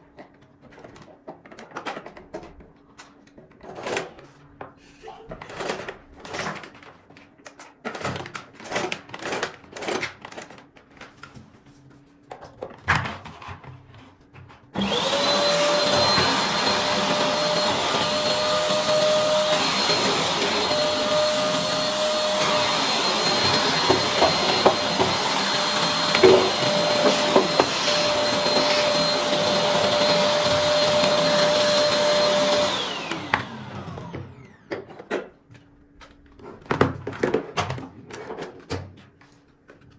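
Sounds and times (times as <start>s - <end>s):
vacuum cleaner motor whining: 14.8s - 35.1s.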